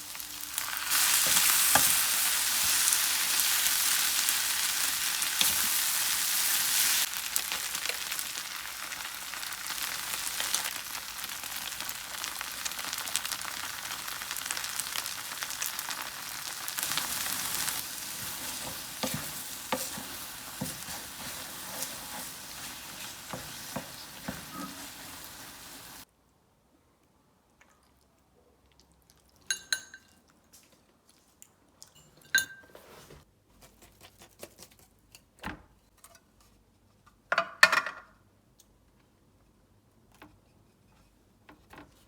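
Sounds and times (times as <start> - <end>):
food sizzling in a frying pan: 0.0 - 26.1
utensil scraping a pan: 16.8 - 26.0.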